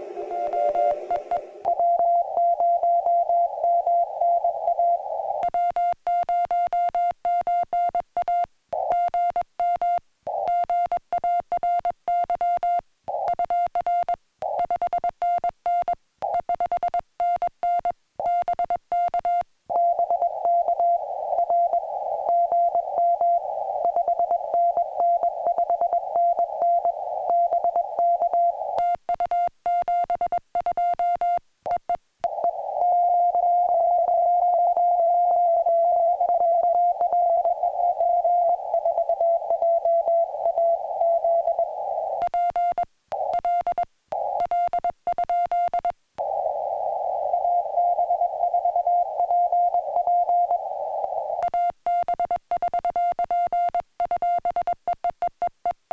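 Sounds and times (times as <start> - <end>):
radio hiss: 0.0 - 5.5, 19.8 - 28.8, 32.3 - 42.2, 44.1 - 44.5, 46.2 - 51.5
morse code tone: 0.2 - 46.4, 47.2 - 55.4.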